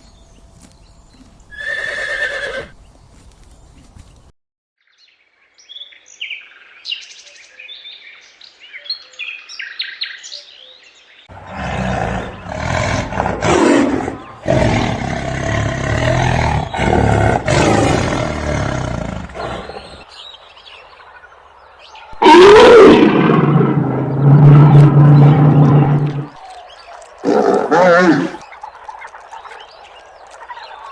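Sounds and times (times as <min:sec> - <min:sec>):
small birds chirping: 0:00.0 - 0:04.3, 0:05.0 - 0:22.2
rough animal calls: 0:11.3 - 0:20.1.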